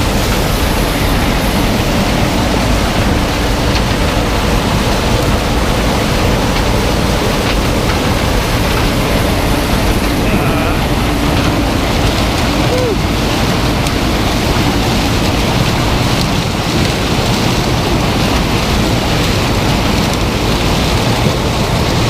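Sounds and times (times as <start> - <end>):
combine harvester running: 0.0 - 22.0.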